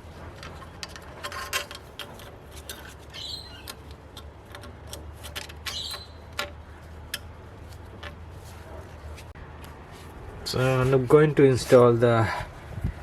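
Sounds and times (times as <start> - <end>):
squeaky rubbing: 0.5 - 6.9.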